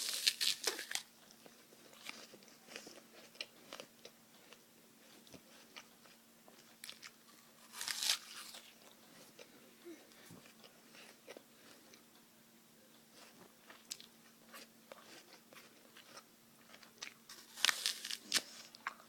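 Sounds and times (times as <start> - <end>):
apple crunching bites: 0.0 - 1.1, 6.8 - 8.9, 13.9 - 19.0.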